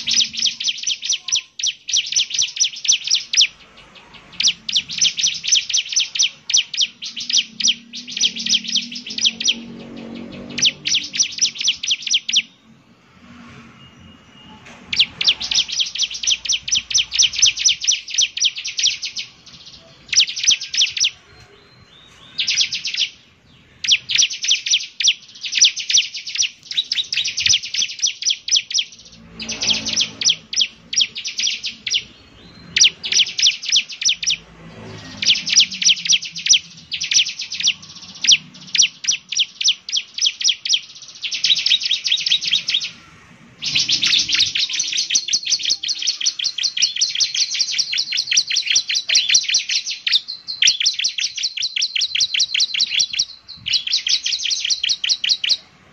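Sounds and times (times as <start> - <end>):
bird singing rapid dry trills: 0.0 - 12.7, 13.9 - 55.9.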